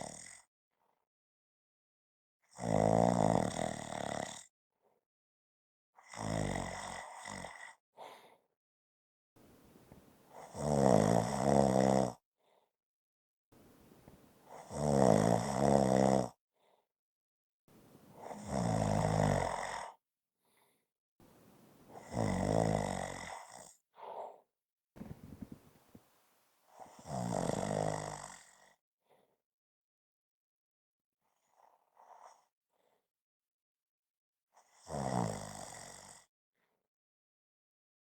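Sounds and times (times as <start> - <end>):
faint breaths: 9.4 - 10.6, 13.6 - 14.7, 17.7 - 19.6, 20.4 - 23.0, 25.0 - 26.9
person snoring: 9.8 - 12.1, 14.0 - 16.3, 18.0 - 19.9, 21.6 - 23.5, 25.0 - 26.1, 26.9 - 28.5.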